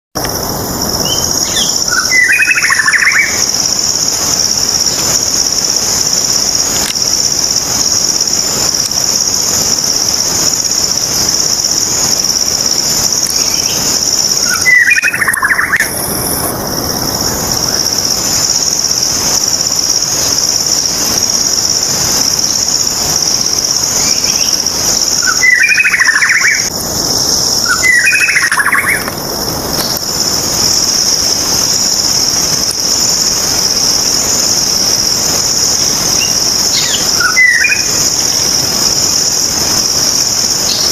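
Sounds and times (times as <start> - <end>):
high-pitched insect drone: 0.2 - 40.9.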